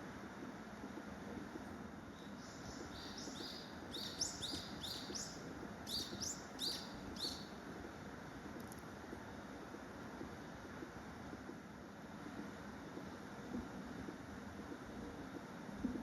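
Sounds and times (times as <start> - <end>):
low background noise: 0.0 - 16.0.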